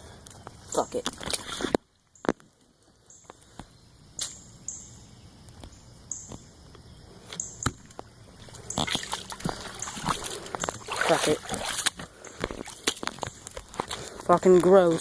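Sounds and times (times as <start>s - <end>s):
footsteps sloshing through mud: 1.0s - 1.8s, 8.3s - 15.0s.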